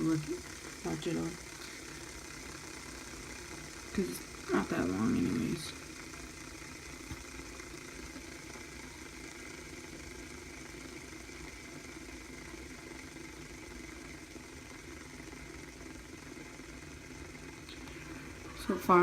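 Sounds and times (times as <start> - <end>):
fidget spinner whirring hum: 0.0 - 19.0.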